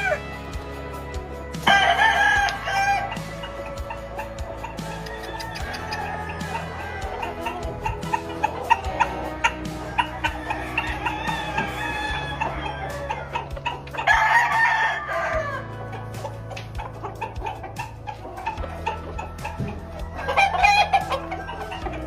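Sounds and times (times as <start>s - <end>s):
chickens clucking: 0.0s - 22.0s
roosters crowing: 0.0s - 22.0s.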